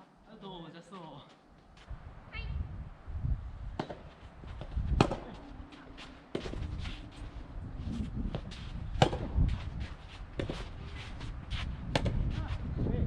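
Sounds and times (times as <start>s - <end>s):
wind rumble on microphone: 1.9s - 5.8s, 6.4s - 13.0s
tennis balls hit by rackets: 3.7s - 7.2s, 8.2s - 12.4s.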